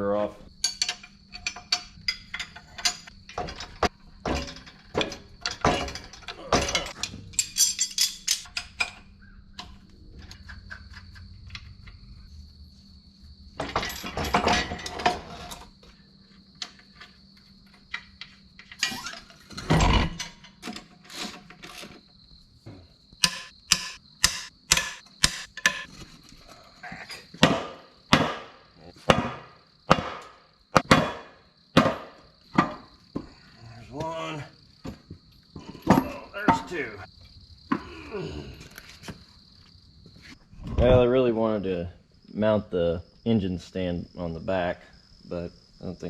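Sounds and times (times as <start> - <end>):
metal tools clinking on metal: 0.6 - 12.0, 13.6 - 15.7, 16.6 - 22.0, 35.6 - 37.0.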